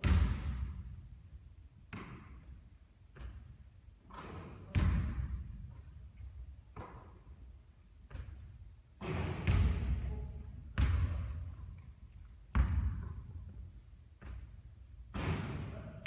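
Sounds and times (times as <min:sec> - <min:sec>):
basketball bouncing on hard court: 0:00.0 - 0:00.9, 0:01.9 - 0:02.5, 0:03.1 - 0:03.5, 0:04.2 - 0:07.2, 0:08.0 - 0:11.6, 0:12.5 - 0:15.6.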